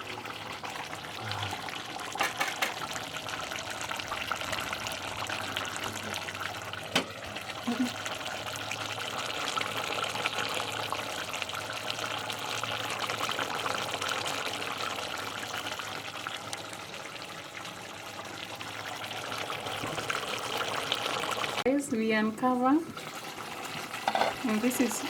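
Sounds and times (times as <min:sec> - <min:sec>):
food bubbling and sizzling in pan: 0:00.0 - 0:25.0.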